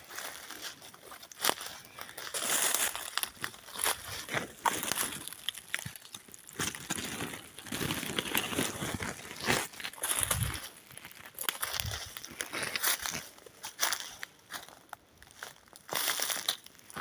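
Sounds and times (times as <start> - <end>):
pine needles crunching: 0.0 - 17.0.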